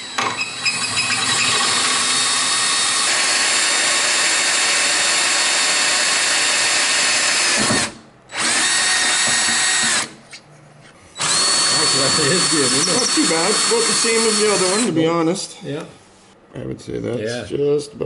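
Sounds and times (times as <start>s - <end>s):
power drill boring into metal: 0.0s - 10.2s, 11.2s - 14.9s.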